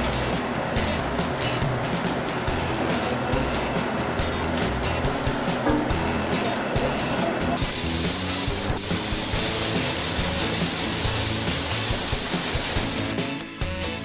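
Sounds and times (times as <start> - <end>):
air gun hissing compressed air: 7.6 - 13.2.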